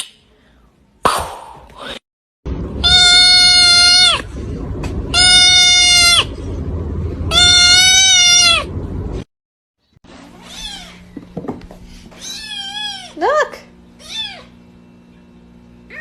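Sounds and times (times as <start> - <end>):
low rumble: 2.5 - 9.3
animal calling high pitch: 2.8 - 4.3, 5.1 - 6.3, 7.3 - 8.7.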